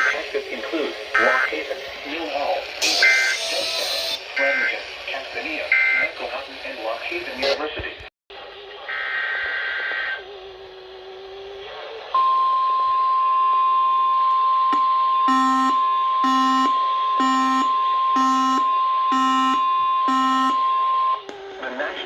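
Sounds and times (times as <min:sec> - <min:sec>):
steady warning alarm tone: 0:00.0 - 0:00.5, 0:01.1 - 0:01.8, 0:02.6 - 0:04.9, 0:05.7 - 0:06.2, 0:08.9 - 0:10.2, 0:12.1 - 0:21.3
buzzy electronic beep: 0:02.8 - 0:04.8, 0:15.3 - 0:21.2
data burst tones: 0:02.8 - 0:04.8.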